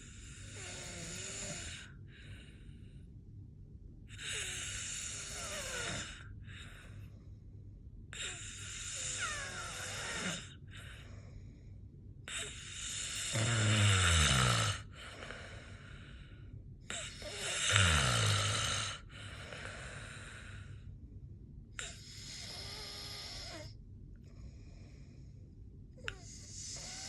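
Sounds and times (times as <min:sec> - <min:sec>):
loud snoring: 0:00.0 - 0:01.9, 0:04.1 - 0:06.3, 0:08.2 - 0:10.6, 0:12.3 - 0:15.7, 0:16.9 - 0:20.6, 0:21.8 - 0:23.7, 0:26.1 - 0:27.0.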